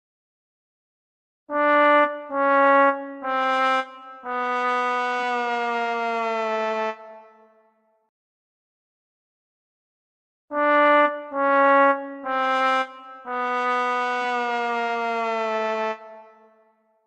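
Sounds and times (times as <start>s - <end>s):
sad trombone notes: 1.5s - 7.3s, 10.5s - 16.4s.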